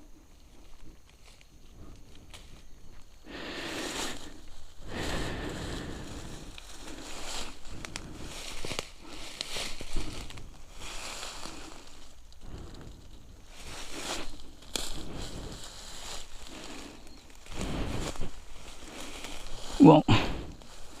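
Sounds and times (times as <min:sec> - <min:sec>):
rustling dry vegetation: 0:00.0 - 0:21.0
twigs snapping: 0:06.4 - 0:19.8.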